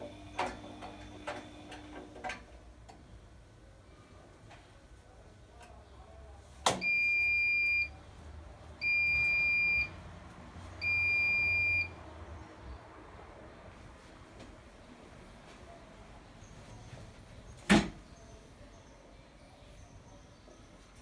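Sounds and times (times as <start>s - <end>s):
washing machine beeps: 6.8s - 8.0s, 8.8s - 10.0s, 10.8s - 12.0s.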